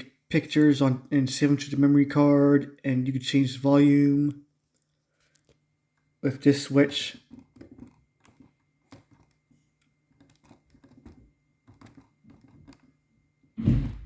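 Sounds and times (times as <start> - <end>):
low thump: 13.6 - 14.0.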